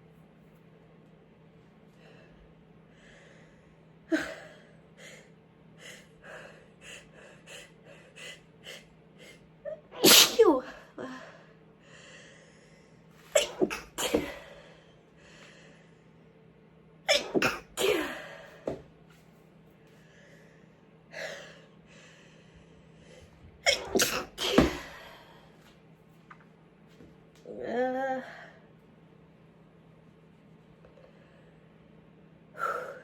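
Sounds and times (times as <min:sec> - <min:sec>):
woman sneezing: 0:09.7 - 0:10.8, 0:13.4 - 0:14.4, 0:17.1 - 0:18.4, 0:23.7 - 0:25.0.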